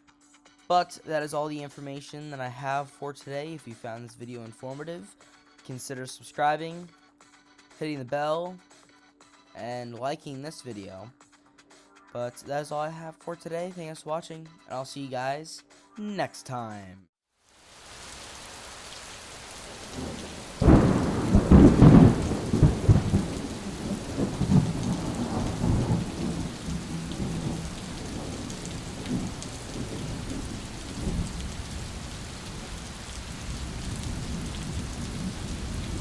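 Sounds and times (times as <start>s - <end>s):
steady rain: 17.5s - 36.0s
thunder clap rumbling: 19.7s - 36.0s.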